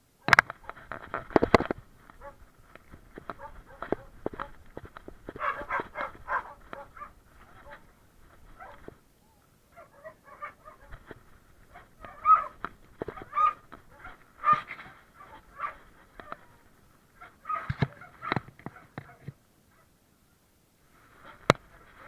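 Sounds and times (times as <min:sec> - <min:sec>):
short animal calls: 0:11.7 - 0:19.3.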